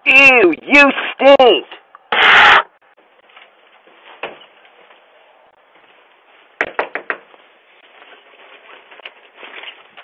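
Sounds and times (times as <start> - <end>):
sharp knocks: 6.6 - 7.3.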